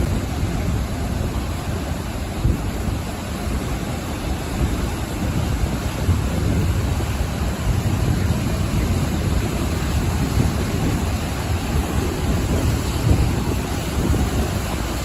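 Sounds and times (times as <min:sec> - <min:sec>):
ocean waves breaking: 0:00.0 - 0:15.0.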